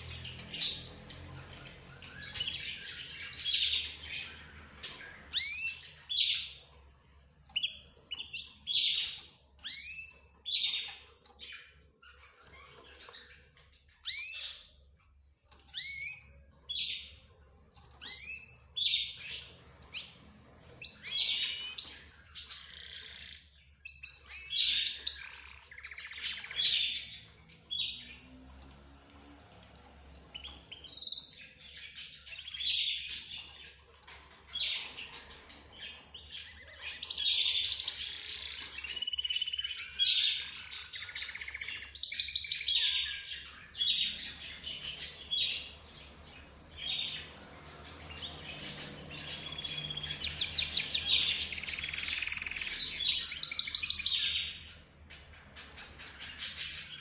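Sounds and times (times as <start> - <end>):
cage birds chirping: 0.0 - 57.0.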